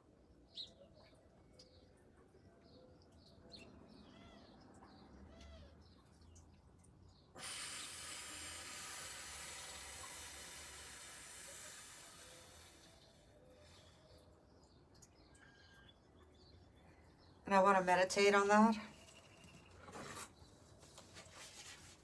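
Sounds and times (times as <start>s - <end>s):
small birds chirping: 0.4s - 7.4s, 12.0s - 21.6s
slow deep exhale: 7.4s - 14.2s.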